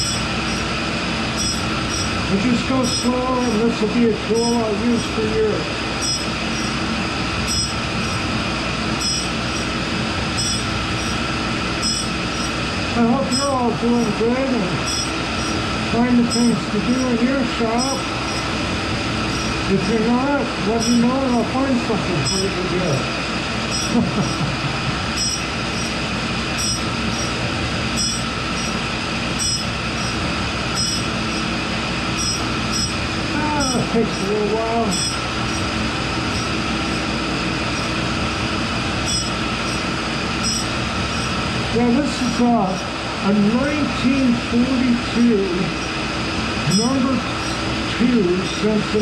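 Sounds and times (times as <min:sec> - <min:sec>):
high-pitched grinding squeal: 0:00.0 - 0:00.7, 0:01.3 - 0:05.4, 0:06.0 - 0:06.8, 0:07.4 - 0:08.3, 0:09.0 - 0:23.0, 0:23.7 - 0:24.5, 0:25.1 - 0:27.4, 0:28.0 - 0:28.8, 0:29.4 - 0:38.0, 0:39.0 - 0:41.4, 0:46.6 - 0:47.7
grinder running: 0:00.0 - 0:49.0.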